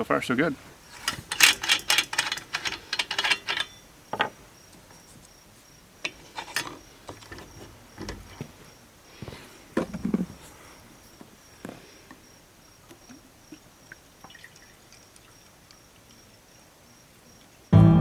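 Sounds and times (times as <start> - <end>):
insect chirping: 0.0 - 17.8
acoustic guitar music: 17.7 - 18.0.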